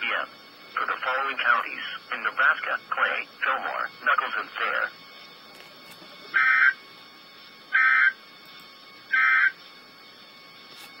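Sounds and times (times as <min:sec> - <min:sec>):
two-tone digital data bursts: 0:00.1 - 0:05.3, 0:06.3 - 0:08.2, 0:09.0 - 0:09.8.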